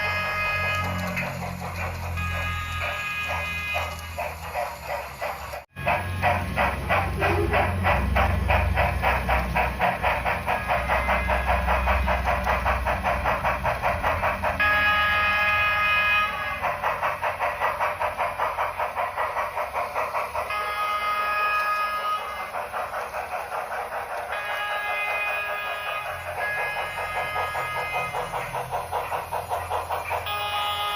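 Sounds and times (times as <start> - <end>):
multi-note train whistle: 0.0 - 4.5, 14.5 - 17.8, 20.4 - 22.6, 24.2 - 30.9
steam locomotive exhaust chuffs: 0.0 - 30.9.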